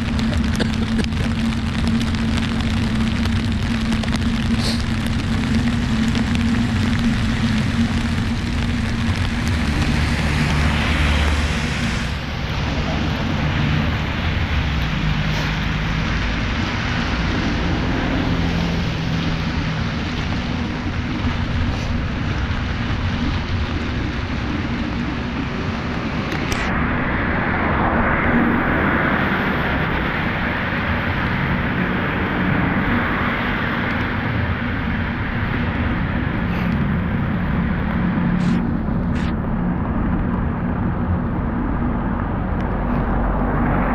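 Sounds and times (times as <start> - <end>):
rain hiss: 0.0 - 39.6
vehicles passing on wet road: 0.0 - 43.9.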